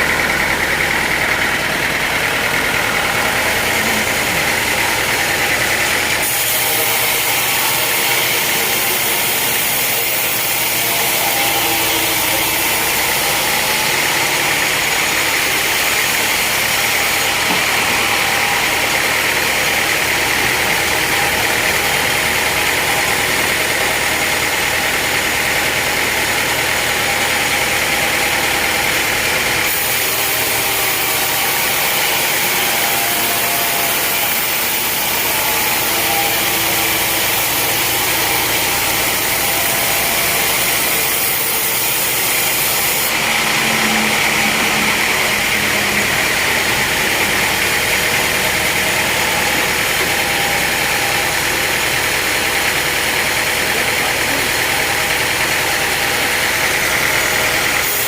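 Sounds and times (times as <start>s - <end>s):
sawmill saw drone and whine: 0.0s - 58.0s.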